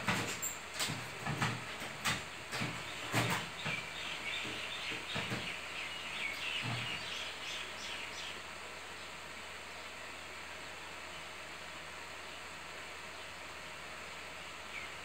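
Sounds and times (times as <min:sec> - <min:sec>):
bird chirping: 0:02.9 - 0:08.4.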